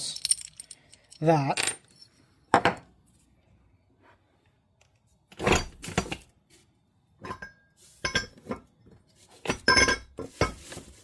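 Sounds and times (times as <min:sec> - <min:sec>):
metal engine parts clinking: 0:00.0 - 0:02.9, 0:09.4 - 0:11.0.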